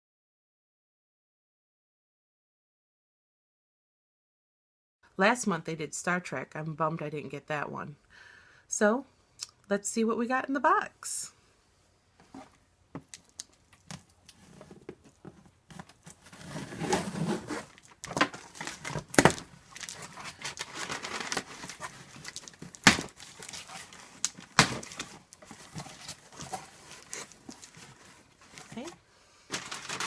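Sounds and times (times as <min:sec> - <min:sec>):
packing paper rustling: 0:13.4 - 0:30.0
tape tearing: 0:15.7 - 0:28.9.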